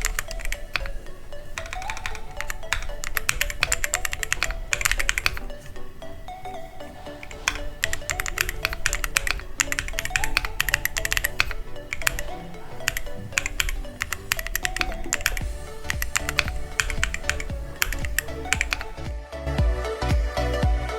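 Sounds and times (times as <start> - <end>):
mechanical keyboard typing: 0.0 - 19.1
background music: 0.0 - 20.9.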